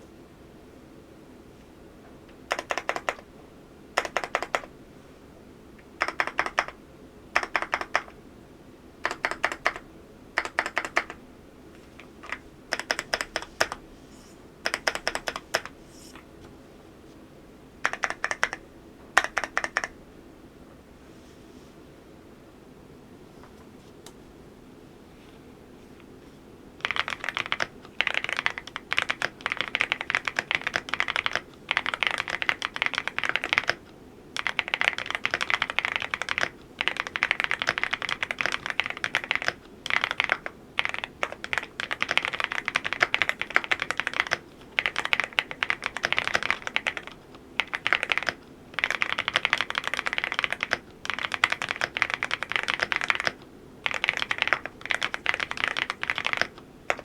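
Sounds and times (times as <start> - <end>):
mechanical keyboard typing: 2.5 - 3.3, 4.0 - 4.7, 6.0 - 6.8, 7.4 - 8.2, 9.0 - 9.8, 10.4 - 11.2, 12.2 - 13.8, 14.6 - 15.8, 17.8 - 18.6, 19.2 - 20.0, 26.8 - 57.0.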